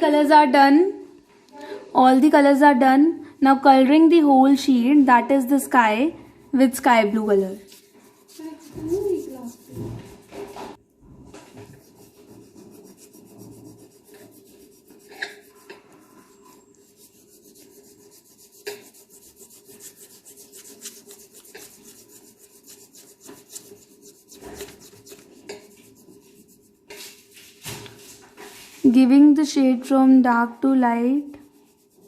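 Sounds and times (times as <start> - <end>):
crayon rubbing on paper: 6.5 - 10.8, 11.5 - 27.3, 31.1 - 32.0.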